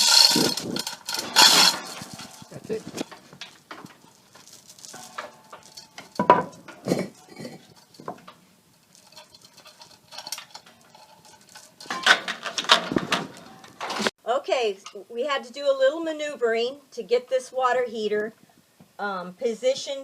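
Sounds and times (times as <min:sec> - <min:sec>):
metallic clanks and scrapes: 0:00.0 - 0:14.1.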